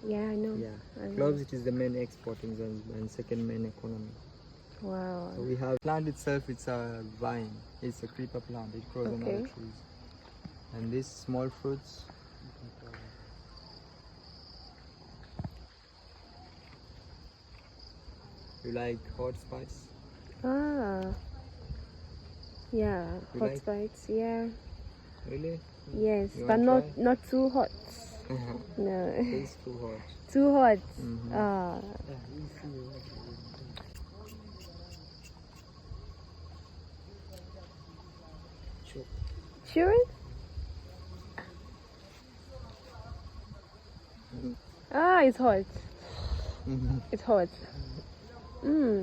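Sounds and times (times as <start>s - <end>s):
faint rapid pulsing insect call: 0.0s - 49.0s
insects chirring drone: 0.0s - 49.0s
high-pitched insect chirring: 25.3s - 42.1s.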